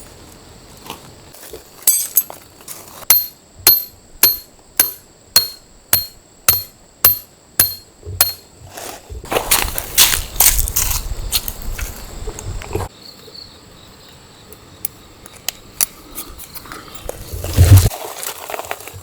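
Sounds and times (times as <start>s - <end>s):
hammer striking metal: 3.1s - 8.5s.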